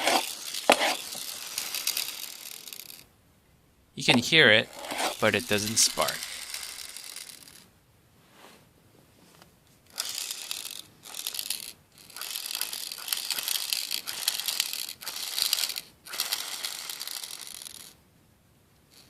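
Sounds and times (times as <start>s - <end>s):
toy wheels ratcheting grind: 0.0s - 3.1s, 4.6s - 7.7s, 9.9s - 18.0s.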